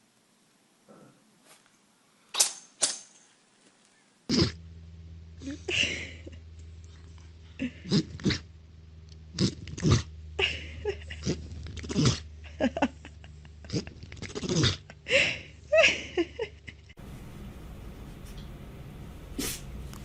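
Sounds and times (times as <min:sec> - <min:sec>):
pet sneezing: 0:19.3 - 0:19.8.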